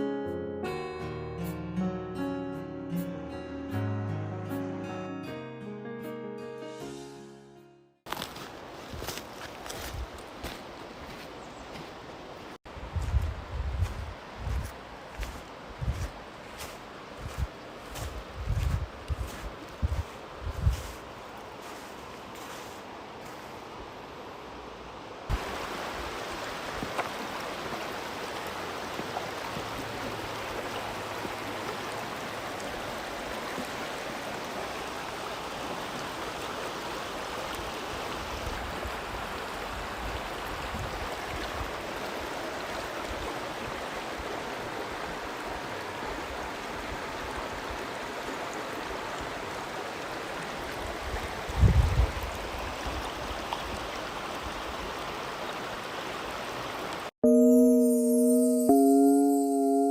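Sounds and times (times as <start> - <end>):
river water rushing: 14.2 - 18.3, 18.9 - 51.5.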